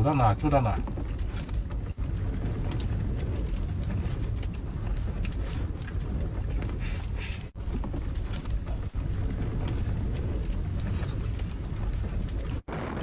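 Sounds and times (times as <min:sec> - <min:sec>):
faint clicks and rattles: 0:00.0 - 0:12.9.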